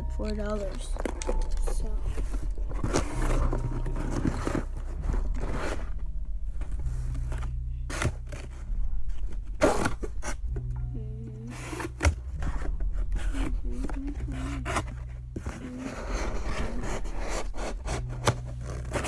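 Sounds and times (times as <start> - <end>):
steady low hum: 0.0 - 19.0
packaging scrapes and rustles: 0.8 - 6.0, 11.5 - 19.0.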